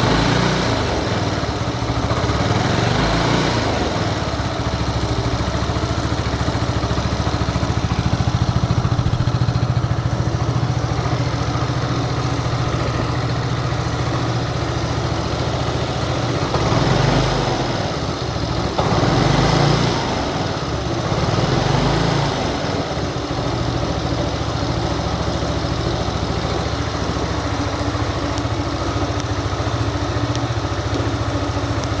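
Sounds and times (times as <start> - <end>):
engine throttle blips: 0.0 - 32.0
scooter engine idling: 0.0 - 32.0.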